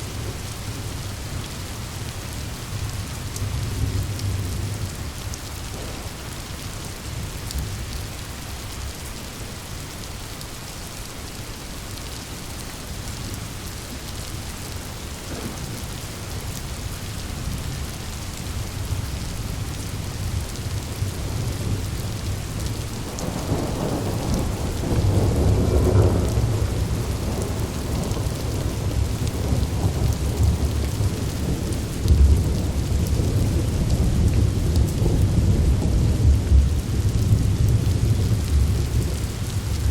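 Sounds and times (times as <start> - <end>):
heavy rain: 0.0 - 39.9
thunder rumbling: 5.7 - 6.6, 15.2 - 16.6, 20.2 - 39.9.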